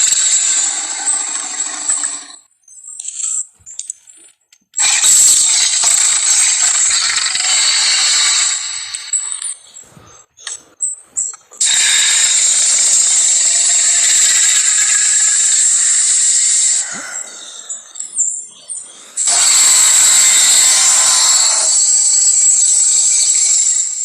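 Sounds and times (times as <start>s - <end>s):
creature hissing: 19.2s - 22.0s.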